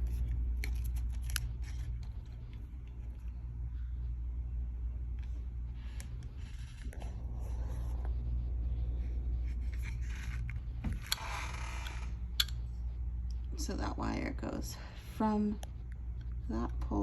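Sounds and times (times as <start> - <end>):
steady low hum: 0.0 - 17.0
handling noise scraping and rustling: 5.8 - 8.3, 9.0 - 12.1.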